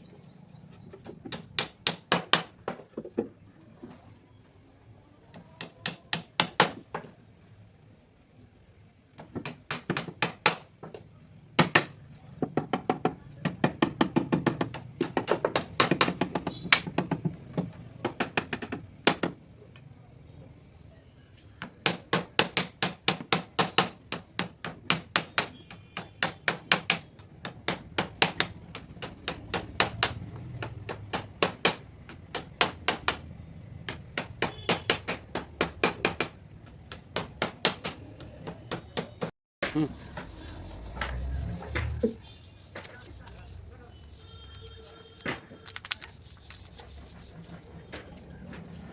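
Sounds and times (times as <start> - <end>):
hammer blows on wood: 39.6 - 45.6.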